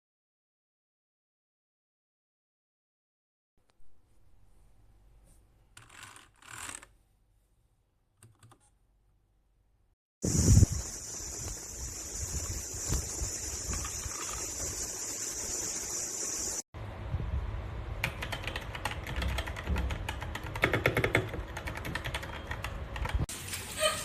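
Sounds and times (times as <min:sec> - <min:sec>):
steady hiss: 0:10.2 - 0:16.6
mechanical keyboard typing: 0:18.0 - 0:23.3.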